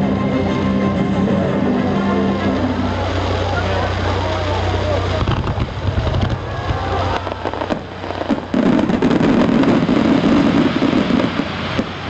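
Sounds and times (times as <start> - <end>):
fireworks crackling and popping: 2.6 - 12.0.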